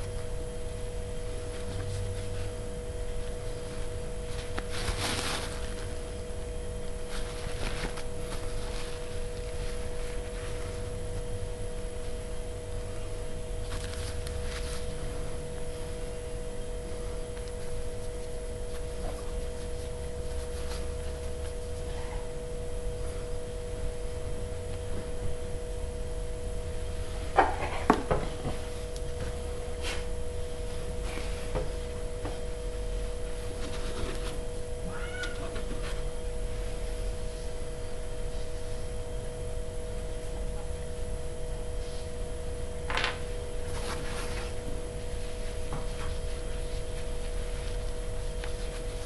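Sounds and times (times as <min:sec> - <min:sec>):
two-note electrical hum: 0:00.0 - 0:49.0
faint rustles: 0:01.3 - 0:11.3.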